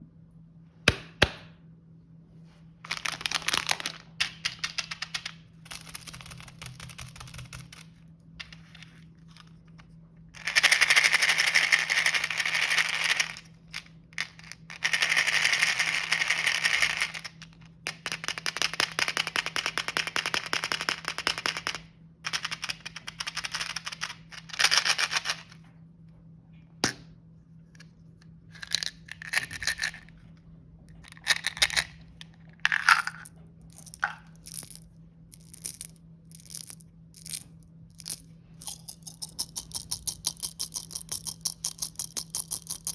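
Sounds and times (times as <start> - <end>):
faint low hum: 0.0 - 42.9
plastic snack packaging crinkling: 2.9 - 4.2.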